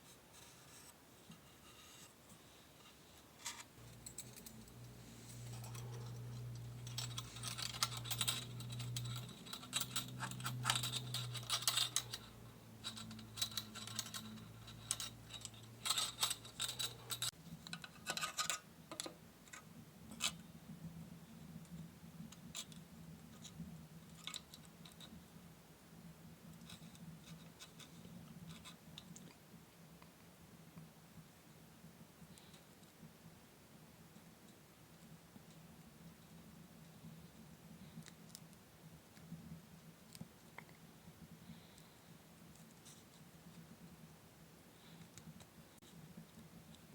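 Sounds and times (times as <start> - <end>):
faint low hum: 0.0 - 46.9
scraping and scratching on wood: 2.8 - 18.6.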